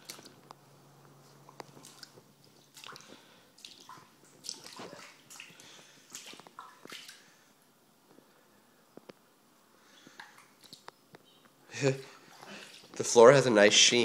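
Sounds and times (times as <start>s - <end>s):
shallow water splashing and dripping: 0.0s - 0.5s, 1.5s - 7.5s, 10.0s - 10.9s, 12.1s - 13.2s.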